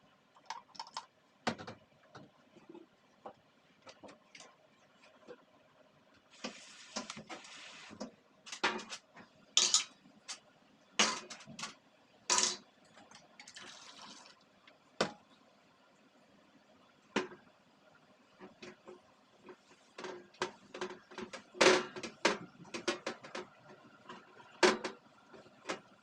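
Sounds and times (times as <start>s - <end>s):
hissing water: 6.3s - 8.1s
parts clattering: 8.5s - 10.0s.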